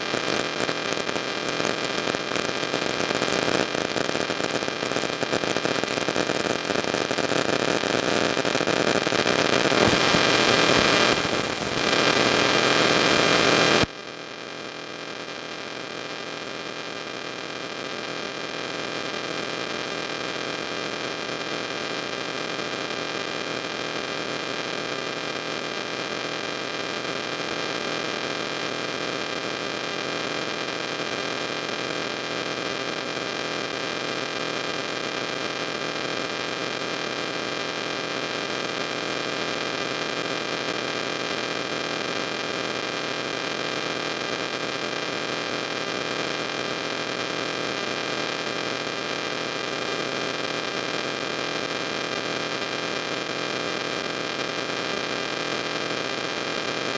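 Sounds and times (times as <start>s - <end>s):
electrical hiss and hum: 0.0s - 13.9s.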